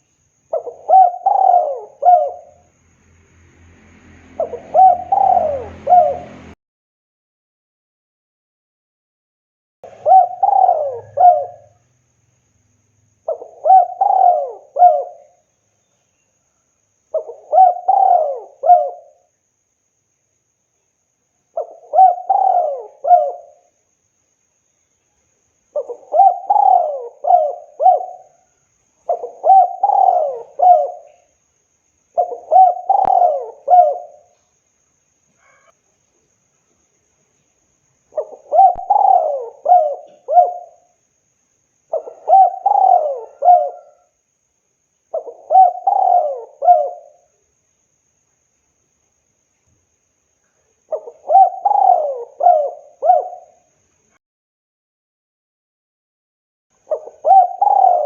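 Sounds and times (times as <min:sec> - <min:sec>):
dove cooing: 0:00.0 - 0:02.6, 0:04.4 - 0:06.6, 0:09.8 - 0:11.8, 0:13.3 - 0:15.4, 0:17.1 - 0:19.3, 0:21.6 - 0:23.7, 0:25.7 - 0:31.3, 0:32.2 - 0:34.3, 0:38.1 - 0:40.9, 0:41.9 - 0:44.2, 0:45.1 - 0:47.3, 0:50.9 - 0:53.7, 0:56.8 - 0:58.0.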